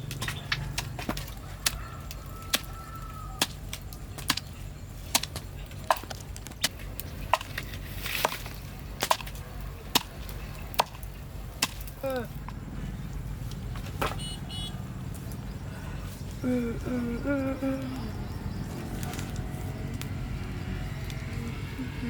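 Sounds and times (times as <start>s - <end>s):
chopping strikes on wood: 5.2s - 11.9s.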